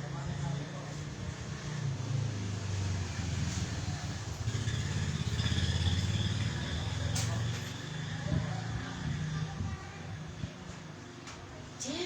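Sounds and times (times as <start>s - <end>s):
vehicle engine running: 1.3s - 9.8s.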